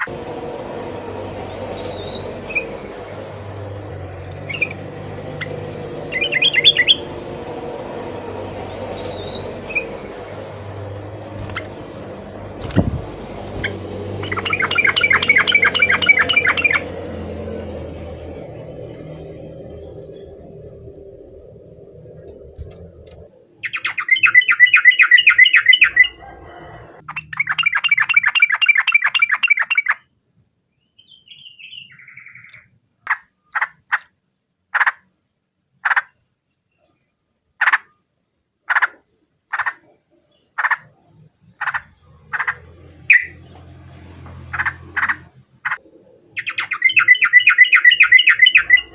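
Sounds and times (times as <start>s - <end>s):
sharp bird notes: 11.4s - 29.5s, 41.6s - 43.4s, 46.4s - 48.9s
bird bubbling chatter: 12.6s - 16.8s.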